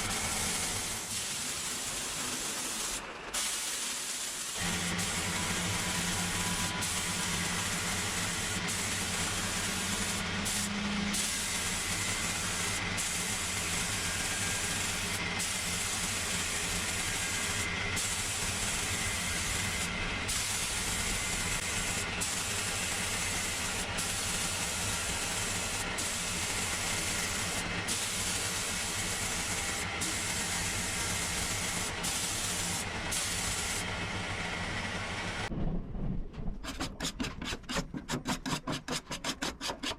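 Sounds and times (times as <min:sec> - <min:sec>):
power tool running: 0:04.6 - 0:35.5.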